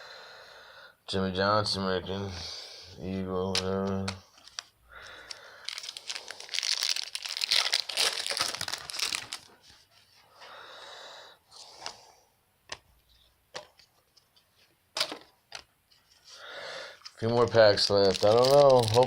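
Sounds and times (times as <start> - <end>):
cards clicking: 3.4 - 5.4
cards rustling: 3.4 - 10.2, 12.7 - 19.0
wrapper tearing and crinkling: 5.3 - 9.6, 17.1 - 19.0.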